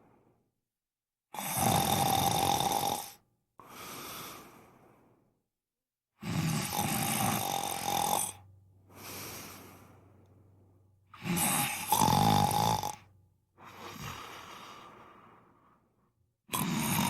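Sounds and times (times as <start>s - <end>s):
man snoring: 1.4s - 4.5s, 6.2s - 8.4s, 11.2s - 13.1s, 13.7s - 15.0s, 16.5s - 17.0s.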